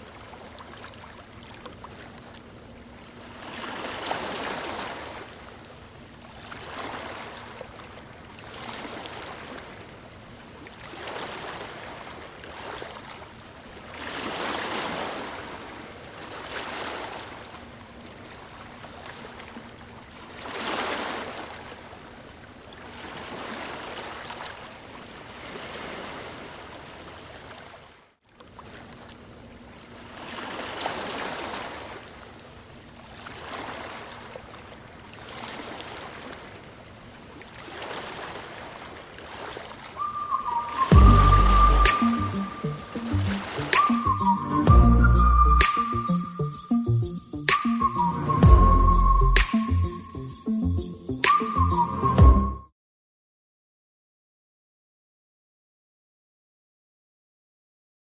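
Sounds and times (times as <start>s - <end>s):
ocean waves breaking on beach: 0.0s - 28.0s, 28.6s - 44.5s.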